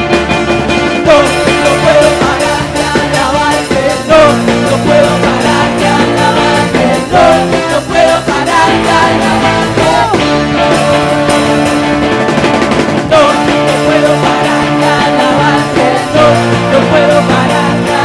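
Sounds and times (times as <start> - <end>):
steady drum beat: 0.0 - 18.0
upbeat instrumental band music: 0.0 - 18.0.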